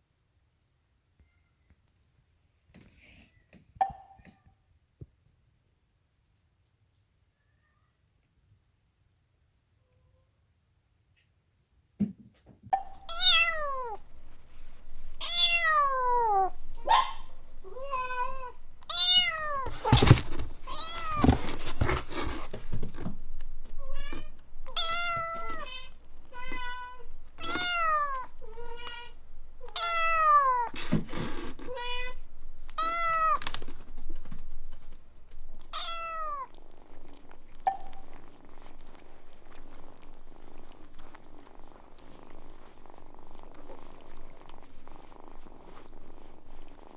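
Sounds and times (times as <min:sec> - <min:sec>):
thumps and rustles: 0:12.0 - 0:35.7
kitten meowing: 0:12.8 - 0:21.4, 0:23.7 - 0:30.9, 0:31.6 - 0:33.6, 0:35.6 - 0:40.8
kitten purring: 0:12.8 - 0:46.9.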